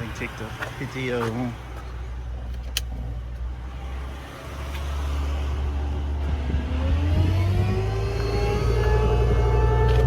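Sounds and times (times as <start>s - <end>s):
truck engine speeding up: 3.0s - 10.0s
rising whine: 5.5s - 10.0s.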